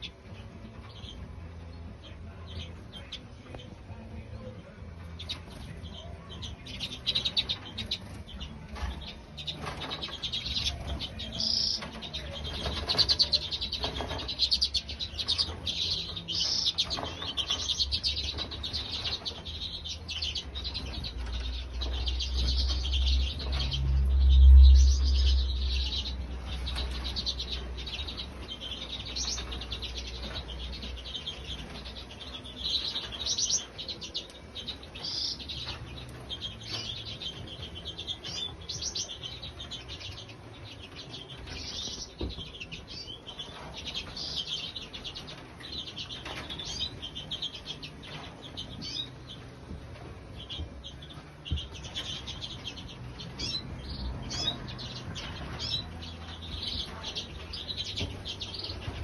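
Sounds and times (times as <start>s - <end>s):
small birds chirping: 0.0s - 59.0s
low rumble: 3.4s - 33.3s.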